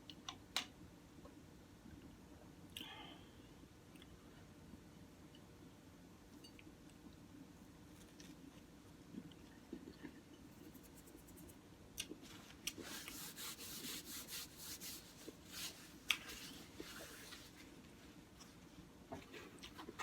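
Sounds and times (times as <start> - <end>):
rustling handling noise: 12.2 - 20.0.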